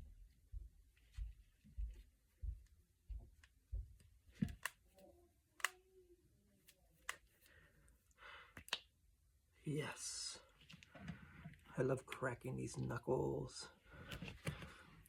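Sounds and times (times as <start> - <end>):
soft low thuds: 0.0 - 4.3
knuckles cracking: 8.5 - 8.9.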